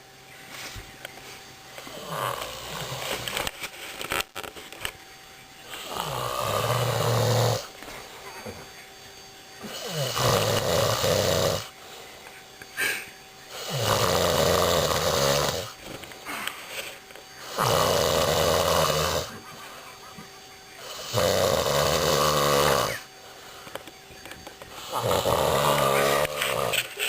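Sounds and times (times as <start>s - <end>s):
loud snoring: 1.9s - 3.3s, 5.7s - 7.7s, 9.6s - 11.7s, 13.5s - 15.8s, 17.4s - 19.4s, 20.8s - 23.1s, 24.7s - 26.9s
quiet breaths: 9.6s - 27.0s.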